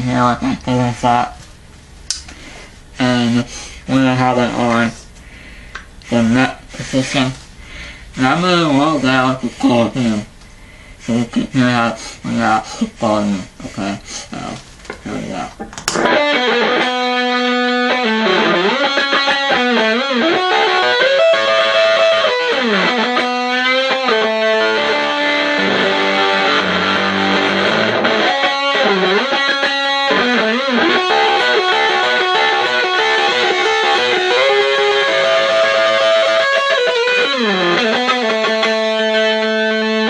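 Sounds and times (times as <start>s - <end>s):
distorted electric guitar: 14.4s - 40.0s.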